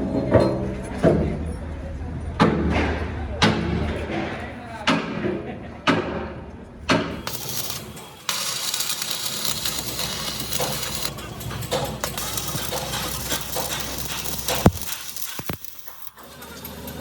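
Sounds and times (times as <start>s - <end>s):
harsh crackling hiss of tool on steel: 7.2s - 16.3s.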